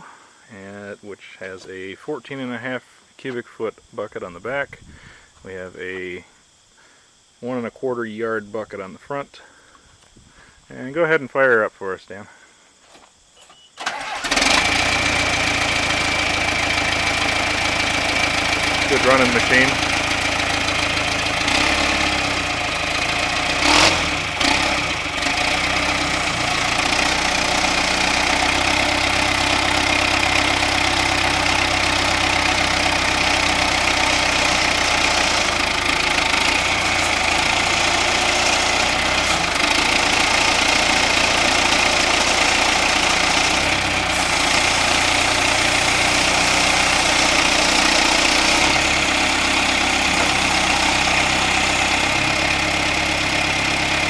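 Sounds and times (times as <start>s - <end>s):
diesel engine running: 13.9s - 54.0s.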